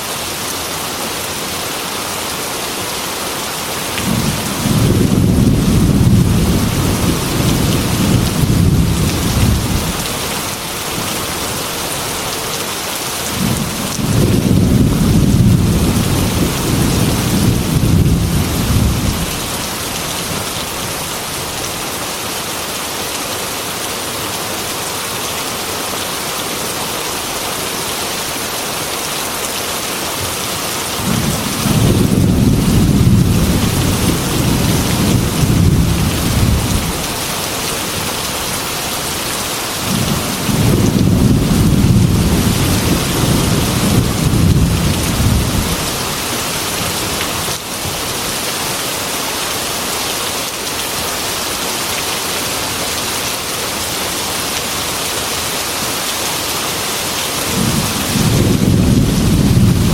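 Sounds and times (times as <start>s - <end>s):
heavy rain falling: 0.0s - 59.9s
rolling thunder: 4.0s - 10.0s, 13.4s - 19.4s, 31.0s - 37.1s, 39.8s - 46.0s, 57.5s - 59.9s.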